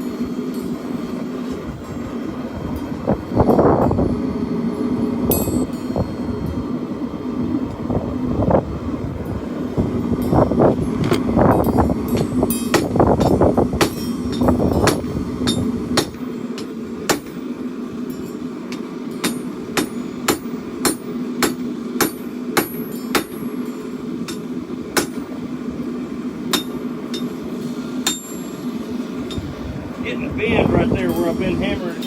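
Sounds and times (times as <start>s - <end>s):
steady hum: 0.0s - 32.0s
wind rumble on microphone: 1.5s - 16.2s, 29.1s - 32.0s
hammer striking hot steel on anvil: 5.3s - 6.2s, 11.5s - 25.3s, 26.5s - 29.6s.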